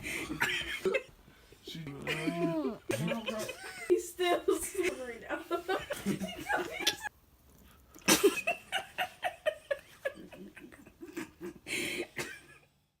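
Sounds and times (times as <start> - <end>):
person giggling: 1.9 - 3.9.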